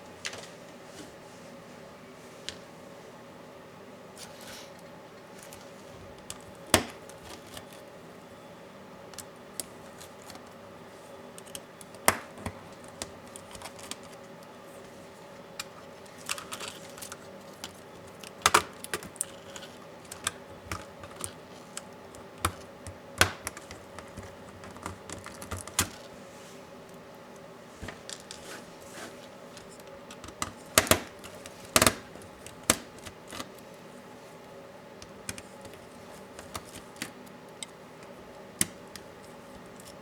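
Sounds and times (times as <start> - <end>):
laptop parts and tools clicking: 11.3 - 14.4, 15.6 - 26.1, 29.5 - 33.6, 35.0 - 40.0.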